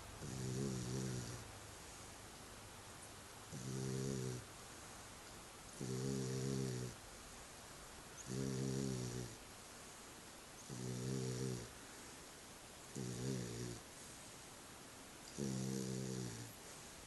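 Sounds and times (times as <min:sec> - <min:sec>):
puppy snoring: 0:00.0 - 0:02.0, 0:03.5 - 0:04.5, 0:05.7 - 0:07.0, 0:08.2 - 0:09.4, 0:10.6 - 0:12.2, 0:12.9 - 0:14.2, 0:15.2 - 0:16.9
quiet breathing: 0:00.0 - 0:17.0.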